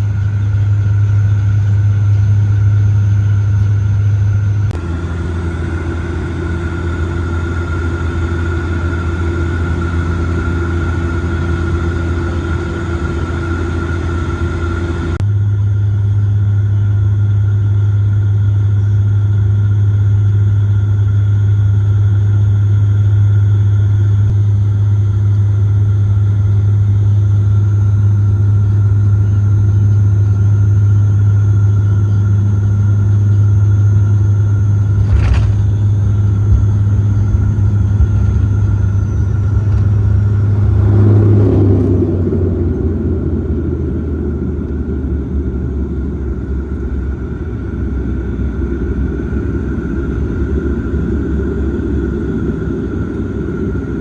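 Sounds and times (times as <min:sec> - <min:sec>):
turboprop cabin drone: 0:00.0 - 0:54.0
aircraft touchdown knock: 0:04.8 - 0:15.2, 0:34.7 - 0:42.5.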